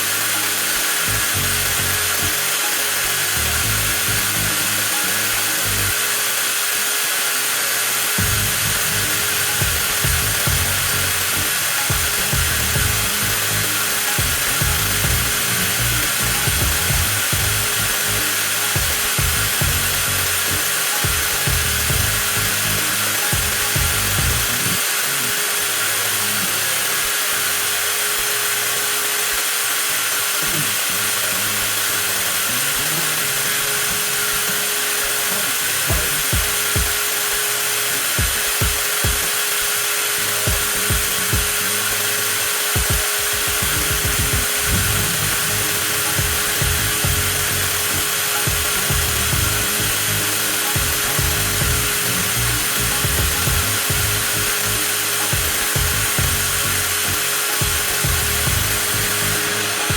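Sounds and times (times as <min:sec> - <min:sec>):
angle grinder motor whining: 0:00.0 - 0:59.9
low thumps: 0:08.2 - 0:13.6, 0:14.2 - 0:18.2, 0:18.8 - 0:20.4, 0:42.8 - 0:59.4.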